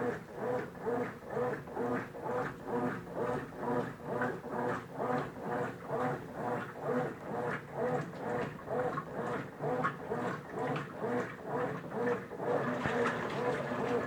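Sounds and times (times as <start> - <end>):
washing machine motor whine: 0.0 - 14.0
water sloshing: 12.7 - 14.0.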